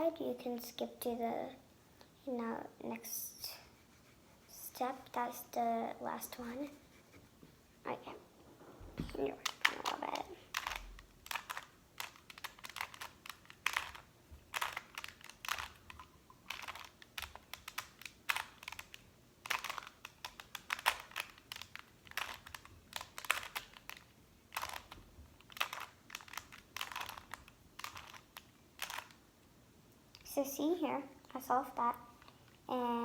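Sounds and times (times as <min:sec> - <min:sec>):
puzzle cube clicking: 0:09.0 - 0:29.2.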